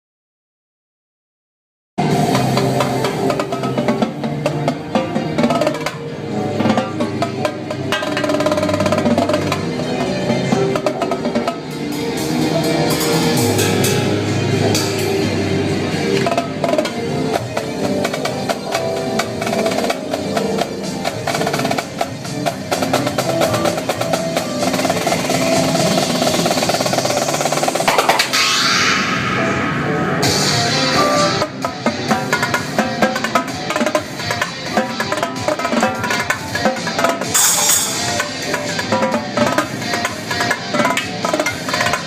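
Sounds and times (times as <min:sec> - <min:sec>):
dance music: 0:02.0 - 0:42.0
drum corps drumming: 0:02.3 - 0:11.8, 0:16.2 - 0:28.3, 0:30.6 - 0:42.0.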